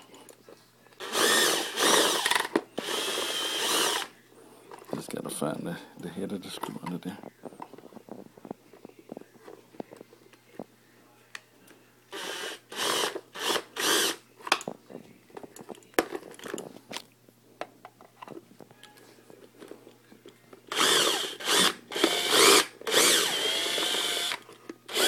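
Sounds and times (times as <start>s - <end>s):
drill spinning: 1.0s - 4.1s, 12.1s - 14.2s, 20.7s - 25.0s
drill bit clicks: 20.7s - 25.0s.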